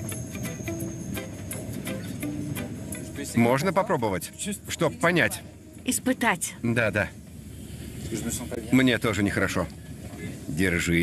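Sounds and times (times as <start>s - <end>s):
light regular clicking rhythm: 0.0s - 4.4s
held notes music: 0.0s - 4.5s.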